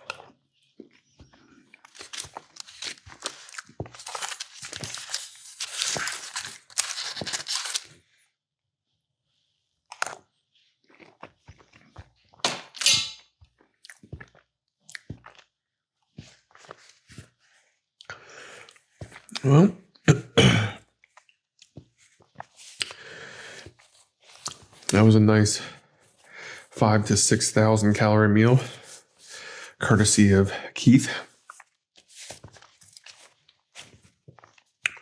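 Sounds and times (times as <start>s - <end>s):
chewing and mouth sounds: 10.8s - 12.4s, 13.8s - 15.5s, 21.1s - 25.0s, 31.4s - 35.0s.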